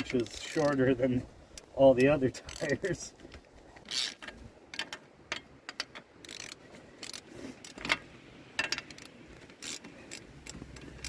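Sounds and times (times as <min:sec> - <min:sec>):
metallic clicks of wrench on lug nuts: 0:03.9 - 0:08.0, 0:08.6 - 0:11.0.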